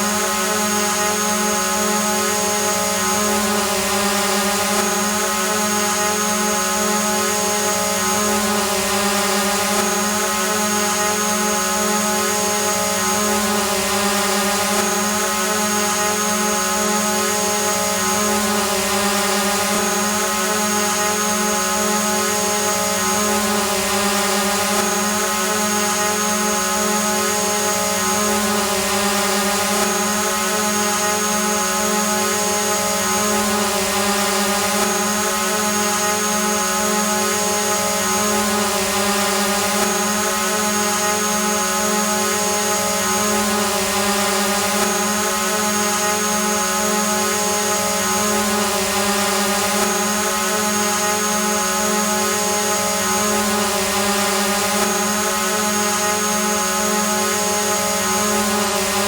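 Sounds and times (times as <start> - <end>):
drone propeller hum: 0.0 - 59.0.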